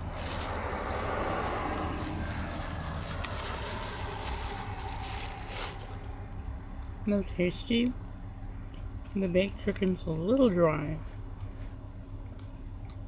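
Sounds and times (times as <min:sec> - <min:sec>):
car passing with tyre hiss: 0:00.0 - 0:06.4.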